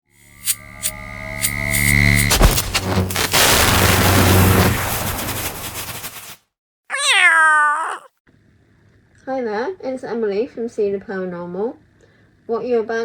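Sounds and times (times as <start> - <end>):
heavy hit: 0.3 - 6.4
loud rushing blast: 0.3 - 6.4.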